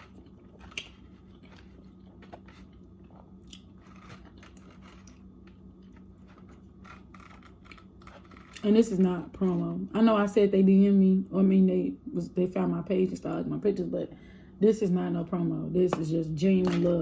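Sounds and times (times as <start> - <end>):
person chewing food: 0.0 - 8.4
small clicks and crunches: 0.0 - 8.7
low room hum: 0.0 - 17.0.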